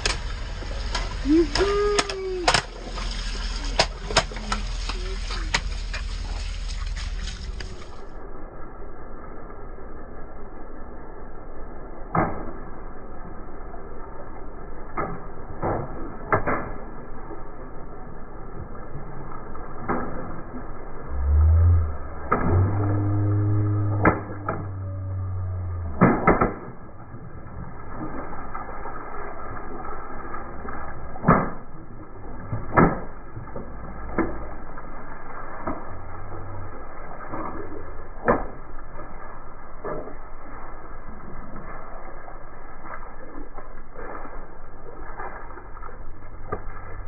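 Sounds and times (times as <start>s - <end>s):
car engine running low: 20.4s - 27.6s.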